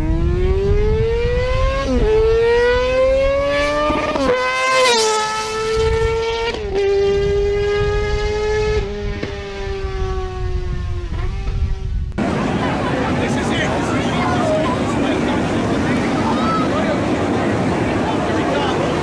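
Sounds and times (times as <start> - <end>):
racing engine revving and shifting: 0.0 - 11.9.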